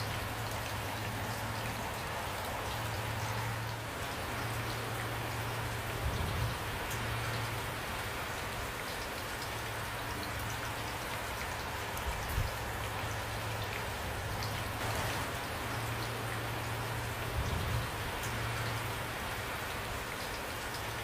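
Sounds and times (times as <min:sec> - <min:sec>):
raindrops ticking: 0:00.0 - 0:21.0
steady rain: 0:00.0 - 0:21.0.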